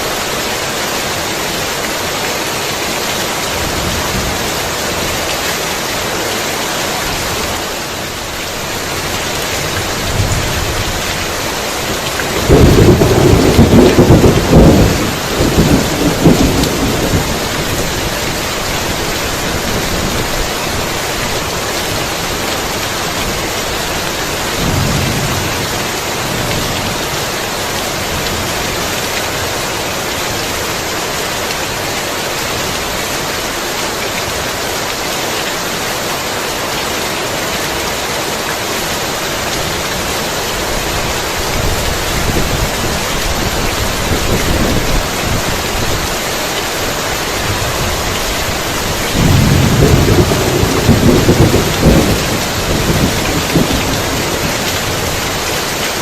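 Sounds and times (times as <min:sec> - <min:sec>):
heavy rain falling: 0:00.0 - 0:56.0
rolling thunder: 0:12.3 - 0:18.2, 0:24.4 - 0:27.3, 0:47.5 - 0:55.2.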